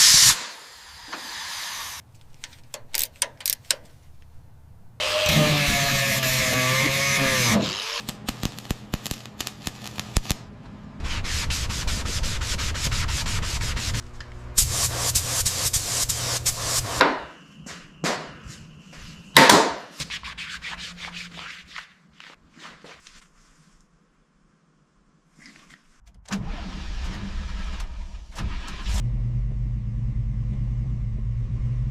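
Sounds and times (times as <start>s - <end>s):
sanding car bodywork: 11.0s - 14.0s.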